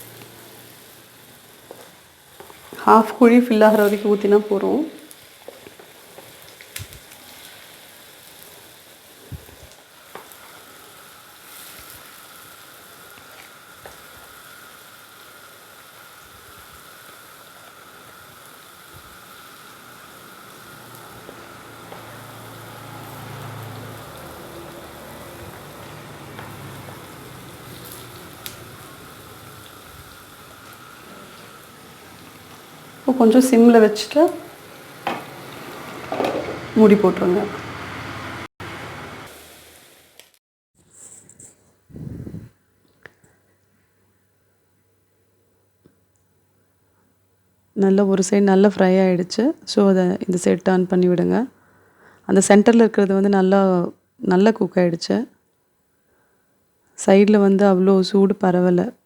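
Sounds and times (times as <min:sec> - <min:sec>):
batter sizzling in hot fat: 0:00.0 - 0:40.4.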